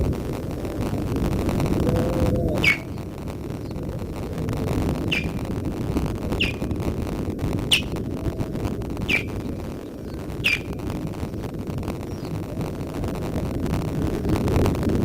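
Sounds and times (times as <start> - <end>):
low background rumble: 0.0 - 15.0
osprey alarm calls: 0.6 - 7.0, 7.6 - 12.5.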